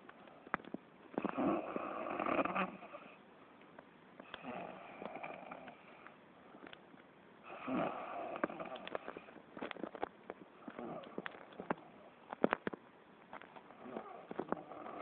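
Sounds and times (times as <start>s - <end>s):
person snoring: 1.2s - 3.2s, 4.3s - 5.8s, 7.5s - 9.1s, 10.6s - 11.3s, 13.8s - 15.0s.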